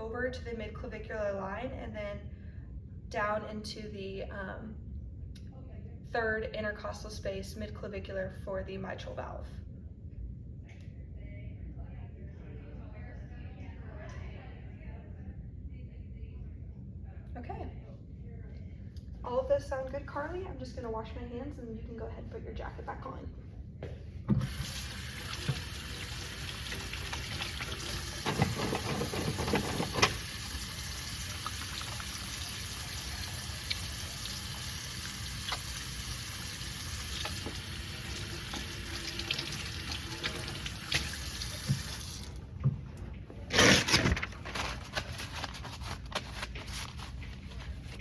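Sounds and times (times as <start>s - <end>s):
tap water running into sink: 24.3s - 42.4s.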